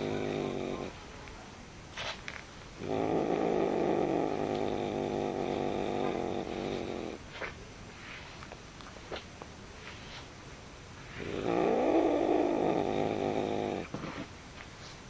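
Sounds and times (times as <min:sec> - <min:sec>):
cat growling: 0:00.0 - 0:01.0, 0:02.8 - 0:07.2, 0:11.1 - 0:14.3.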